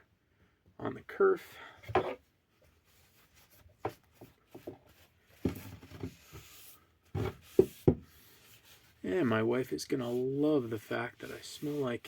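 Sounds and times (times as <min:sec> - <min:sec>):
hand rubbing wood: 0:02.9 - 0:12.0.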